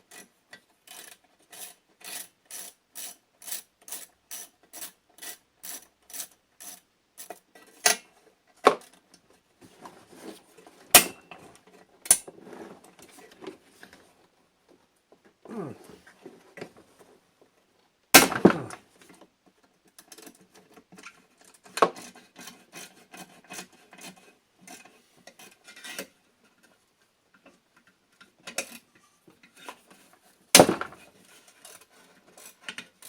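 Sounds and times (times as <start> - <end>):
sharp loud knocks: 18.2 - 18.8.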